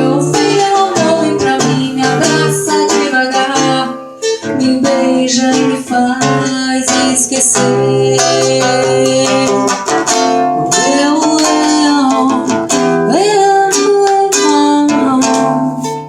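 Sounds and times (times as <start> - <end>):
acoustic guitar accompaniment: 0.0 - 16.0
person singing wordless melody: 0.0 - 16.0.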